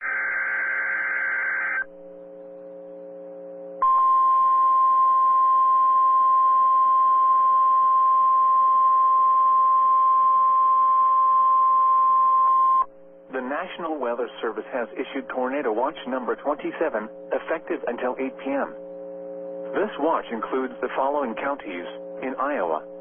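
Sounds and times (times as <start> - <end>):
single-tone radio alarm: 0.0 - 1.9
warbling data tones: 0.0 - 1.9
faint hum: 0.0 - 23.0.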